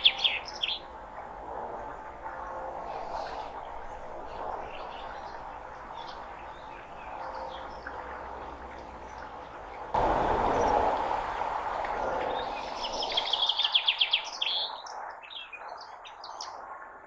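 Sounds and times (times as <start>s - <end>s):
birds chirping and calling: 0.0s - 0.9s, 12.3s - 15.6s
steady background hiss: 0.0s - 17.0s.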